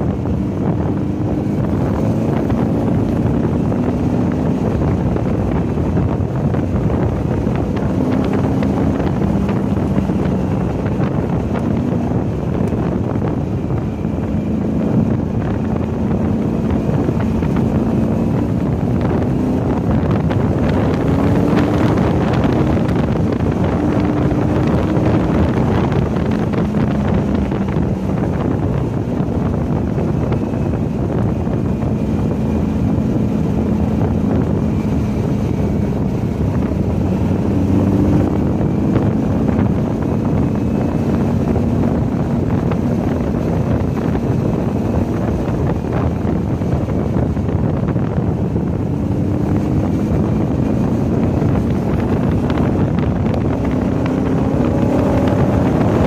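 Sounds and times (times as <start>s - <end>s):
car engine revving: 0.0s - 56.0s
wind noise on microphone: 0.0s - 56.0s.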